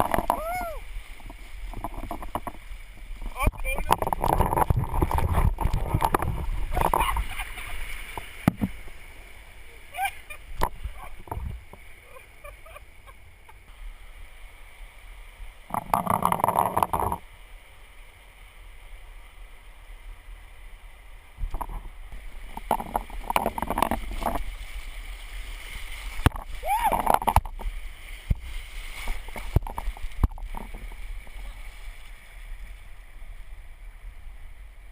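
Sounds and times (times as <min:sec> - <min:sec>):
oar strokes splashing in water: 0:00.0 - 0:13.6, 0:21.4 - 0:33.4
river rushing: 0:00.0 - 0:34.9.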